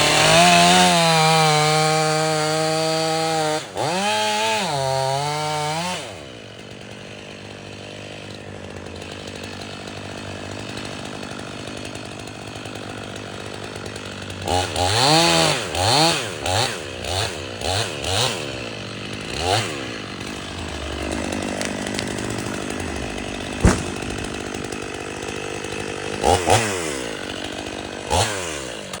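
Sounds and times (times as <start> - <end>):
chainsaw revving: 0.0 - 29.0
sharp knock: 23.5 - 24.5.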